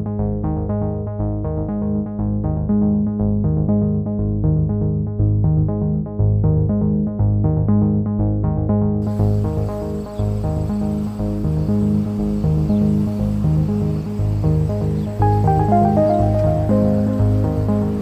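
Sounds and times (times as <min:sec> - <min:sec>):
electronic music with beat: 0:09.0 - 0:18.0.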